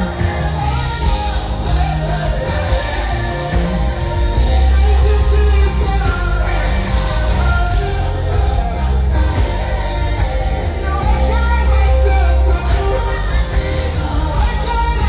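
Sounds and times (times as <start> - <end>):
heavy bass line: 0.0 - 15.0
live band music: 0.0 - 15.0
person singing: 0.0 - 15.0.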